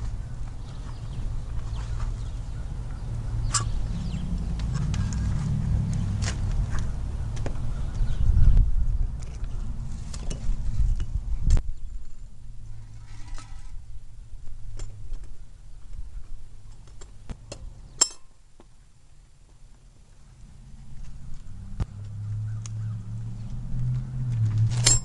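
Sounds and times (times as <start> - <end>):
metal tools clinking: 24.7 - 25.0.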